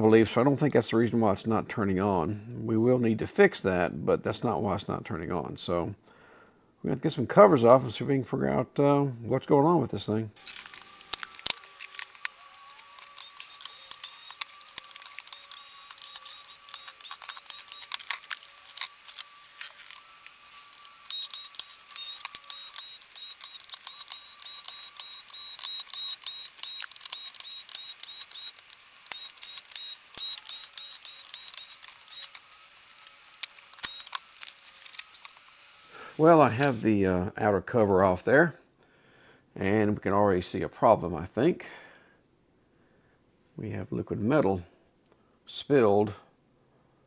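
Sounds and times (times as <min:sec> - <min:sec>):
plastic clicking and scraping: 0:10.4 - 0:35.6.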